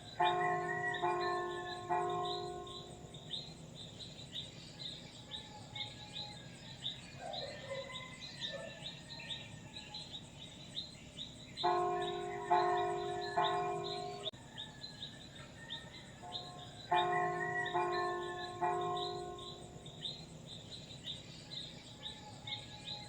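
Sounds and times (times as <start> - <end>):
church bell ringing: 0.0 - 3.6, 11.6 - 14.4, 16.2 - 20.3.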